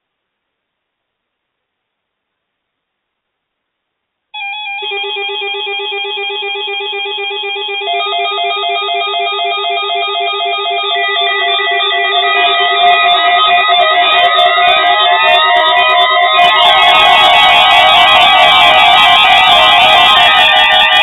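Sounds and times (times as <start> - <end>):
steady low tone: 6.2 - 16.6
rippling warbling notes: 9.8 - 18.0.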